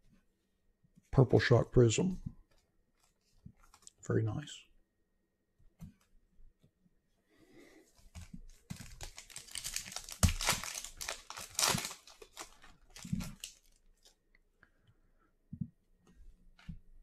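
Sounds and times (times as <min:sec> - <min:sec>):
plastic packaging crinkling: 0:08.2 - 0:14.2.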